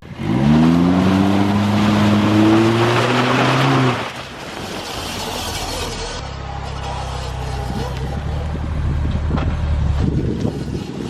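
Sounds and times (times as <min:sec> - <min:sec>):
car engine accelerating: 0:00.0 - 0:04.2
rain: 0:01.1 - 0:05.5.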